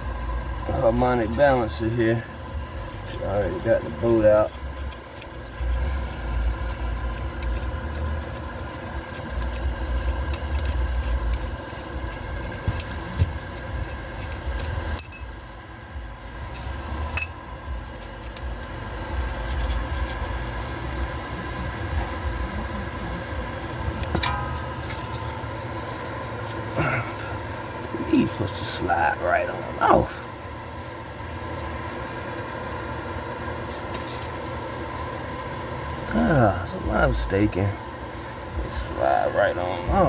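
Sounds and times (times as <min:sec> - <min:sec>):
steady low hum: 0:00.0 - 0:40.0
metal clinks and rattles: 0:01.2 - 0:15.4, 0:24.0 - 0:26.7.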